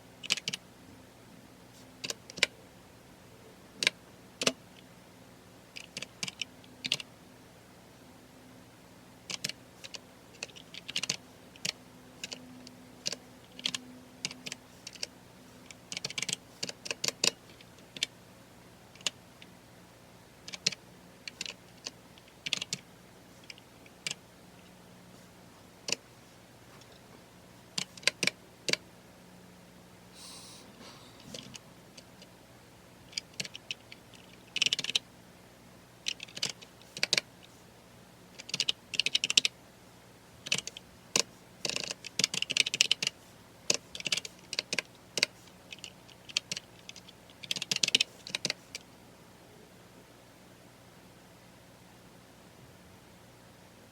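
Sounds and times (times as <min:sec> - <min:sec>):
computer keyboard typing: 0:00.2 - 0:00.6, 0:05.8 - 0:07.0, 0:09.3 - 0:12.4, 0:13.0 - 0:15.1, 0:15.7 - 0:18.1, 0:20.4 - 0:22.8, 0:33.2 - 0:35.0, 0:36.0 - 0:37.2, 0:38.4 - 0:39.5, 0:40.4 - 0:43.1, 0:43.7 - 0:48.8.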